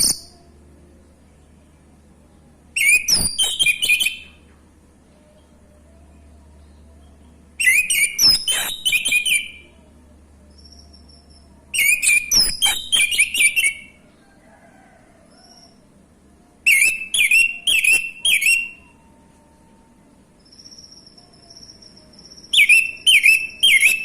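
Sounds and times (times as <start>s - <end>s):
thrush singing whistled notes: 2.8s - 4.4s, 6.6s - 9.7s, 10.5s - 14.0s, 16.6s - 19.0s, 20.4s - 24.0s.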